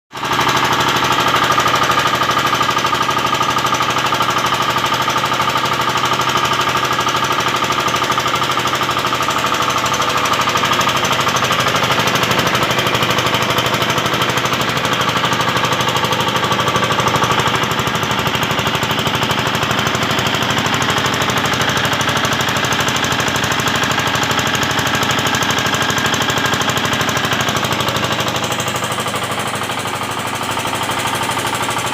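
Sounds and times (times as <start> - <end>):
diesel engine and compressor knocking: 0.1 - 31.9.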